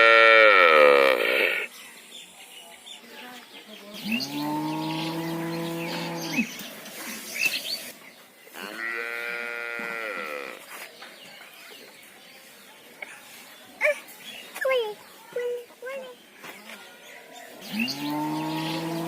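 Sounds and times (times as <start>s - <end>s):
cow mooing: 0.0s - 1.6s.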